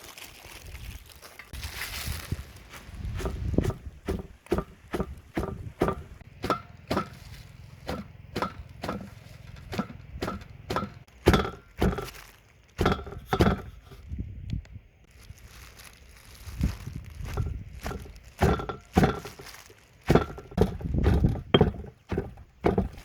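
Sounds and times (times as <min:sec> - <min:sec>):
knife chopping on wooden board: 0:03.2 - 0:12.2, 0:12.8 - 0:14.0, 0:20.1 - 0:23.0.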